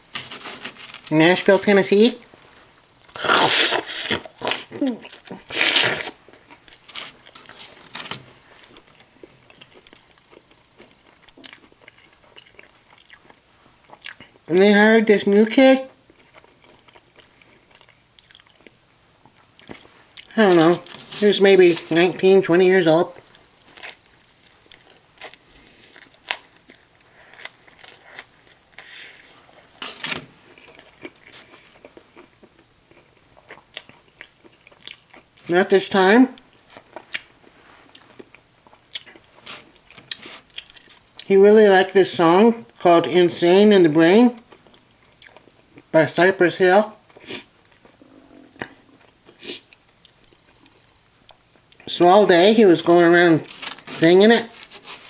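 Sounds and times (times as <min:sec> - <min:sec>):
chewing with crunches: 0:02.3 - 0:14.5, 0:16.0 - 0:22.1, 0:23.2 - 0:35.5, 0:36.4 - 0:41.3, 0:44.4 - 0:45.9, 0:53.4 - 0:55.0
crunchy bite of pizza: 0:03.0 - 0:14.4, 0:24.7 - 0:35.4, 0:53.4 - 0:55.0.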